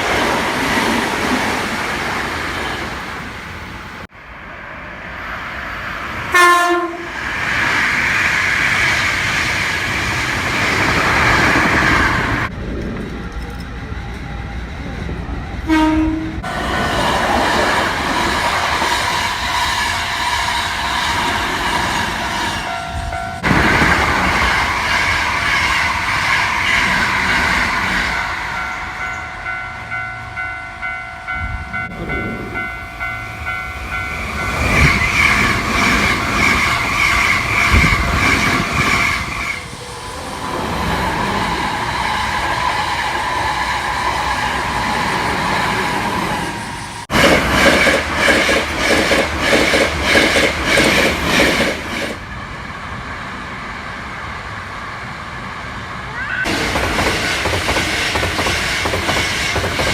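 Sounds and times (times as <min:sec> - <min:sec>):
train horn: 0:06.3 - 0:07.2, 0:15.6 - 0:16.5
level crossing bell clanging: 0:28.2 - 0:34.8
train wheels clattering: 0:47.0 - 0:52.2, 0:56.5 - 0:59.9.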